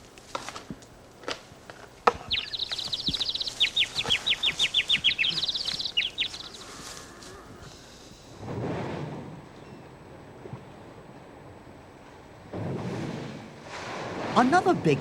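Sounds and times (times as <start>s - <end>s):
bird chirping: 2.0s - 7.9s.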